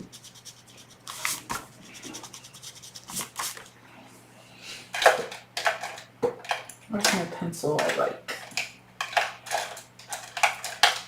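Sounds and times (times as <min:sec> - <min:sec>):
paper rubbing: 0:00.0 - 0:03.7
paper rustling: 0:00.0 - 0:03.7.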